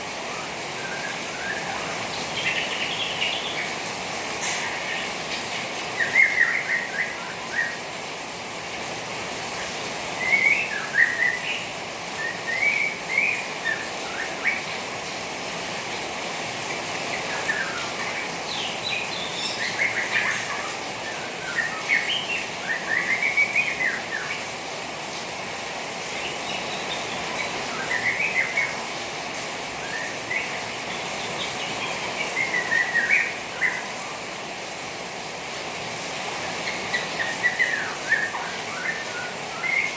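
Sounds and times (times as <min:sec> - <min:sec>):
trickling rainwater: 0:00.0 - 0:39.9
bird twittering: 0:26.3 - 0:28.8, 0:29.8 - 0:34.2, 0:36.5 - 0:39.9.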